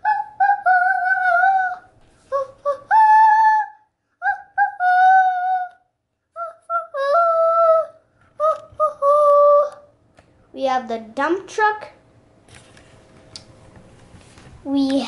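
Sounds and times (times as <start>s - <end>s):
child singing wordless tune: 0.0s - 10.0s.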